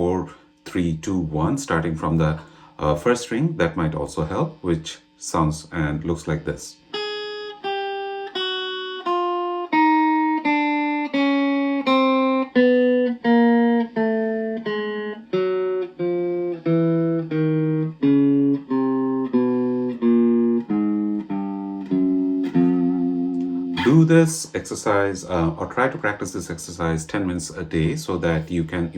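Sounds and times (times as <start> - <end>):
electric guitar single notes: 6.8 - 26.9.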